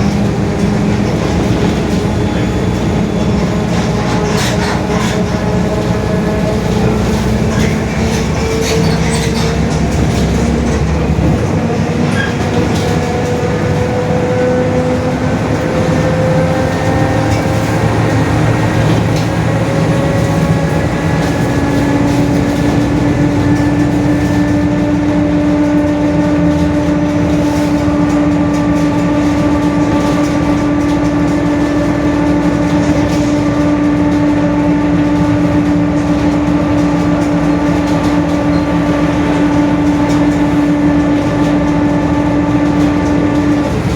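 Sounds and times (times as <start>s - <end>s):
bus differential whining: 0.0s - 43.9s
bus engine and road noise: 0.0s - 43.9s.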